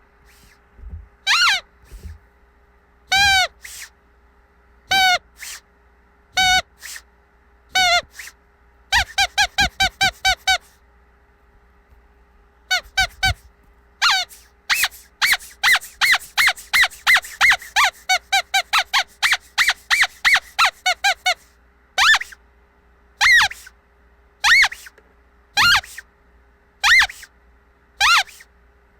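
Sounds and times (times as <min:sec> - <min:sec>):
squeaky dog toy squeaking: 0:01.2 - 0:02.1, 0:03.1 - 0:03.9, 0:04.9 - 0:05.6, 0:06.4 - 0:07.0, 0:07.7 - 0:10.8, 0:12.7 - 0:13.4, 0:14.0 - 0:22.4, 0:23.2 - 0:23.7, 0:24.4 - 0:24.9, 0:25.6 - 0:26.0, 0:26.8 - 0:27.3, 0:28.0 - 0:28.5.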